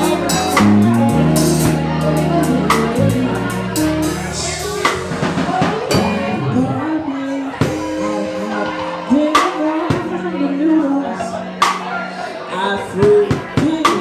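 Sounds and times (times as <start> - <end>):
drum kit strikes: 0.0 - 2.0, 3.8 - 6.5
held bass notes: 0.0 - 14.0
live band playing: 0.0 - 14.0
person singing: 0.0 - 14.0.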